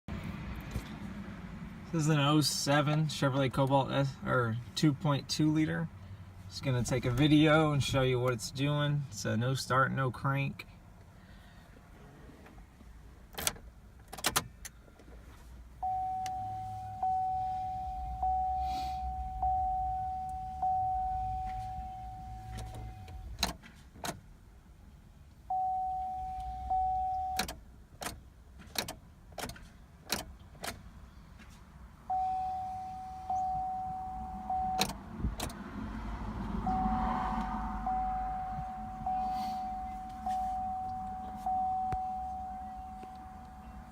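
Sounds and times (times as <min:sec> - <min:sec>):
ignition key clicks: 0:13.3 - 0:14.8, 0:25.5 - 0:30.8, 0:33.3 - 0:35.6, 0:39.8 - 0:43.7
car warning chime dinging: 0:15.8 - 0:23.4, 0:25.4 - 0:27.6, 0:32.0 - 0:35.0, 0:36.6 - 0:43.9.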